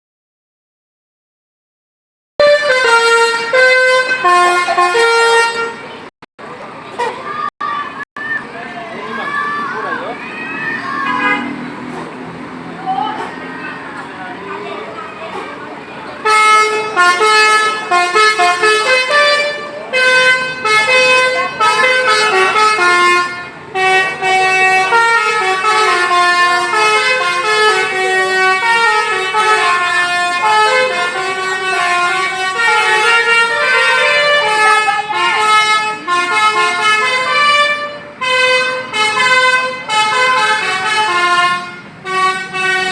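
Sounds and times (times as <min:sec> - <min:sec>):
musical bus horn playing tune: 0:02.4 - 0:06.1, 0:10.9 - 0:12.3, 0:16.1 - 0:42.9.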